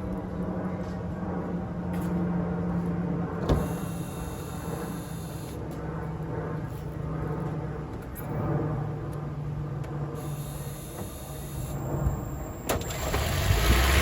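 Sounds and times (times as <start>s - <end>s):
faint high whine: 3.4s - 7.0s, 9.6s - 14.0s.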